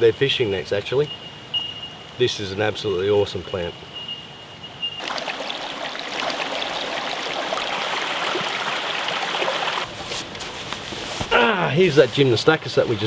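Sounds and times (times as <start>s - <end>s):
creek water running: 5.0s - 13.0s.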